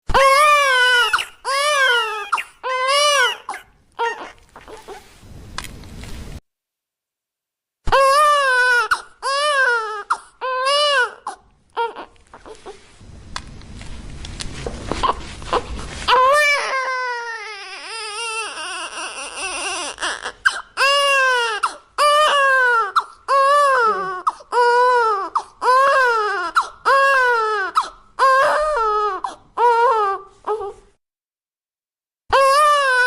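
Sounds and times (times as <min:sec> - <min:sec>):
newborn baby crying: 0:00.1 - 0:05.2, 0:07.9 - 0:12.9, 0:15.0 - 0:30.8, 0:32.3 - 0:33.0.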